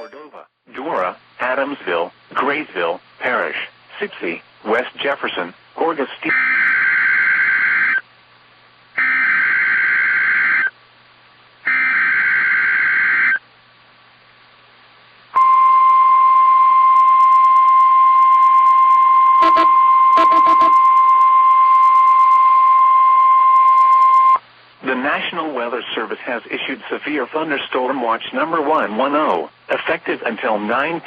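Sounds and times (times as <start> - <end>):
steady alarm tone: 9.0 - 10.7, 11.7 - 13.4, 18.4 - 24.4
screeching digital data bursts: 19.4 - 20.9.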